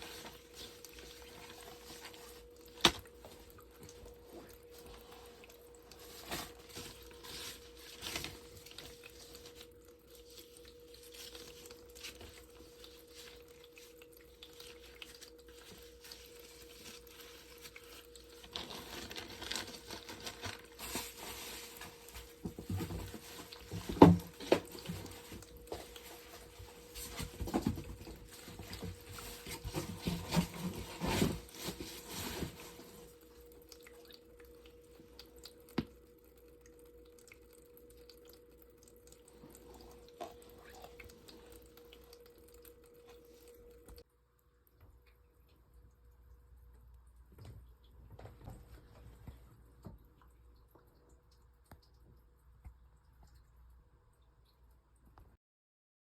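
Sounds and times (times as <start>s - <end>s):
water pattering and dripping: 0.0s - 55.2s
faint steady hum: 0.0s - 55.4s
knocks and handling noises: 18.5s - 33.1s.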